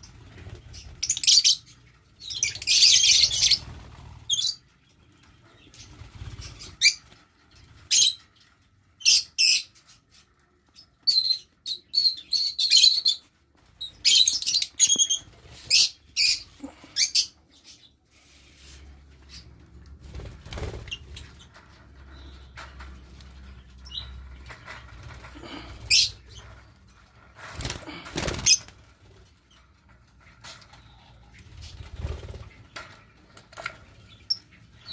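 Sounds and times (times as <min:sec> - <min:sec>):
lovebirds chirping: 0:00.0 - 0:26.8, 0:30.7 - 0:34.9.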